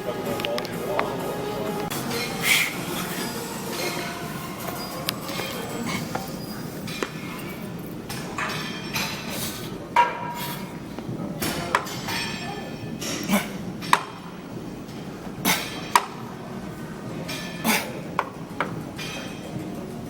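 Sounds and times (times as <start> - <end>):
metal weights clanking: 1.9 - 10.6.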